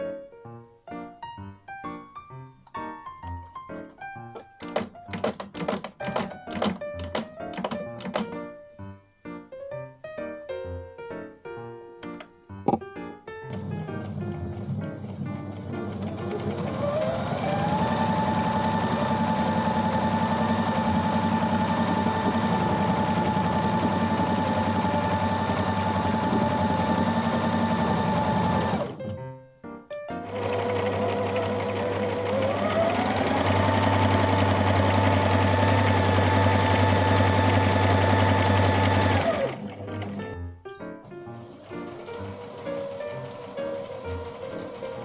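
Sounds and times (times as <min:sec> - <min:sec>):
sewing machine motor whine: 0:13.5 - 0:29.1, 0:30.2 - 0:40.4, 0:41.4 - 0:45.0.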